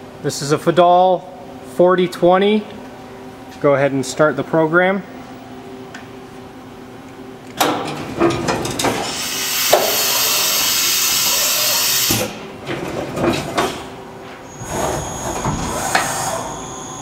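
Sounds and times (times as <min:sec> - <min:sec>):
mechanical clunks and knocks: 0:07.6 - 0:09.0, 0:14.6 - 0:16.3
loud steady hiss: 0:09.1 - 0:12.2
machine low hum: 0:11.4 - 0:17.0.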